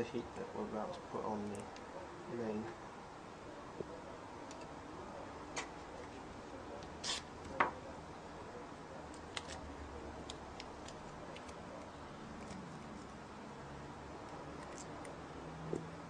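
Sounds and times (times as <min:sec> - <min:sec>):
scratchy rustle: 0:07.0 - 0:07.3.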